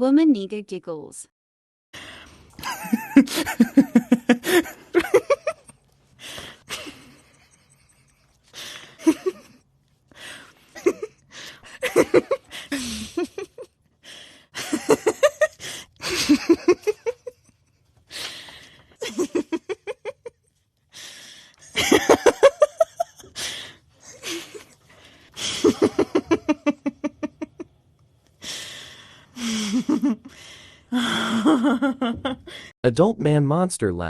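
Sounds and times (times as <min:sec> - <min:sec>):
woman giggling: 0:02.6 - 0:05.8, 0:06.6 - 0:09.6, 0:10.7 - 0:13.7, 0:14.6 - 0:17.8, 0:19.0 - 0:20.4, 0:21.6 - 0:23.4, 0:24.0 - 0:24.8, 0:25.4 - 0:27.7, 0:29.4 - 0:30.3, 0:30.9 - 0:32.6
breathy gasps: 0:30.3 - 0:31.4.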